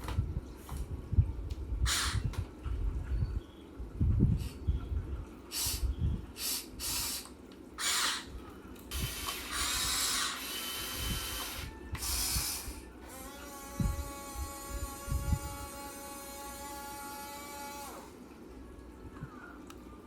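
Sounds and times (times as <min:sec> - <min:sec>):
small electric motors whirring: 0:08.9 - 0:18.2.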